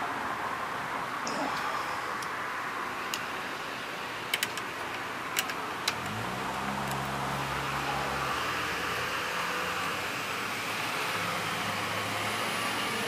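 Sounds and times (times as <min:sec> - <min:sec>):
steady background hiss: 0:00.0 - 0:13.0
small metal parts clicking: 0:04.3 - 0:06.2.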